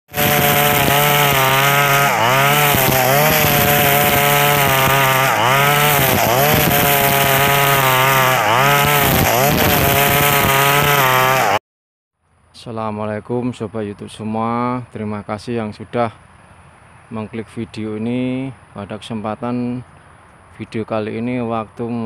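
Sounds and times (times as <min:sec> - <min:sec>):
brush cutter engine at high revs: 0:00.1 - 0:11.6.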